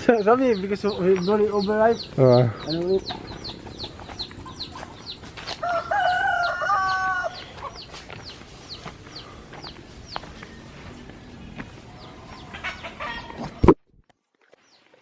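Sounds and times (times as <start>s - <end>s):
rooster crowing: 5.5s - 7.8s.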